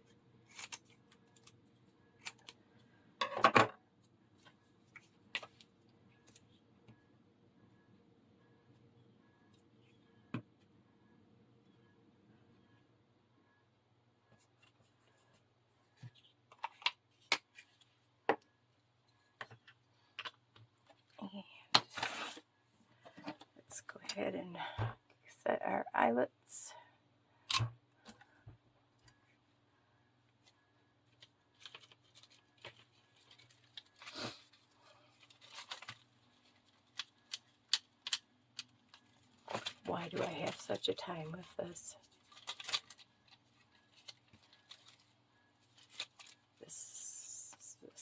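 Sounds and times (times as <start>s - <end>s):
paper rustling: 31.1s - 46.5s.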